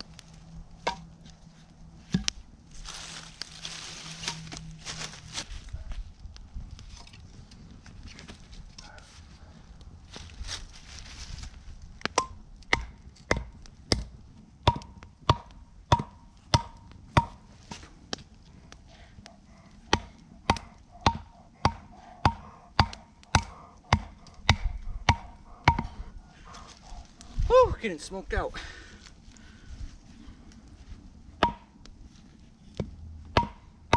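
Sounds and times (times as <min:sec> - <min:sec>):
chopping blows into wood: 0:19.9 - 0:26.0.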